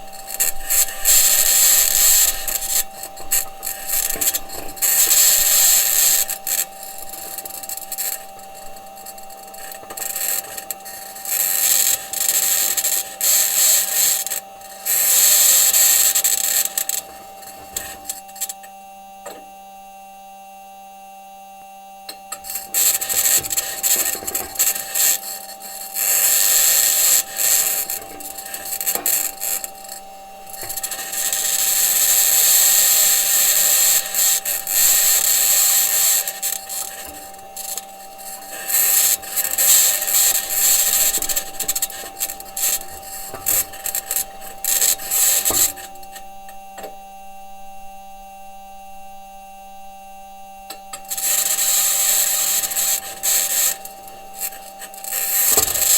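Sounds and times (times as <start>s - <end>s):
steady electrical hum: 0.0s - 55.9s
high-pitched scratching and grinding: 22.4s - 46.6s, 51.0s - 55.9s.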